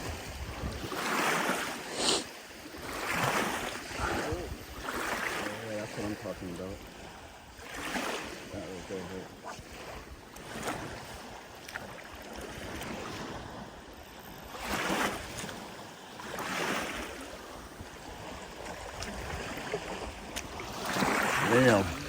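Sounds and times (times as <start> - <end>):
water splashing in shallows: 0.0 - 13.7, 14.5 - 22.0.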